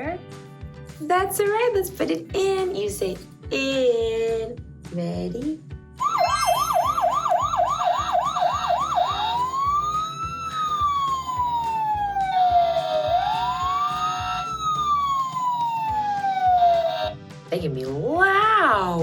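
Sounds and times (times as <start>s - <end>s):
fire truck siren: 6.0s - 17.2s.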